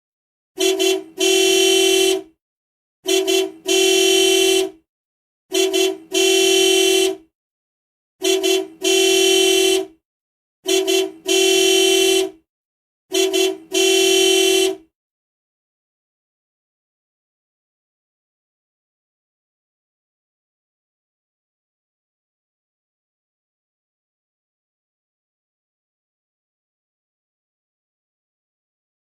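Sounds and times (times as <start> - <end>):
car horn tooting and honking: 0.6 - 2.4, 3.0 - 4.8, 5.5 - 7.3, 8.2 - 10.0, 10.6 - 12.4, 13.1 - 14.9.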